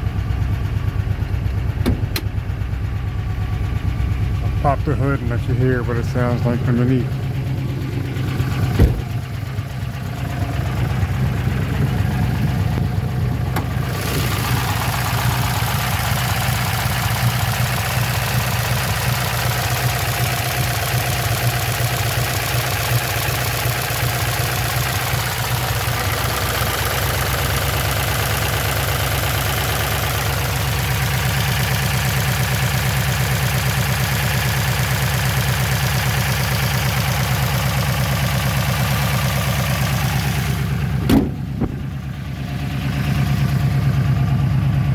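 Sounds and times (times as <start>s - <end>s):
engine idling: 0.0s - 44.9s
valvetrain ticking: 0.9s - 42.2s.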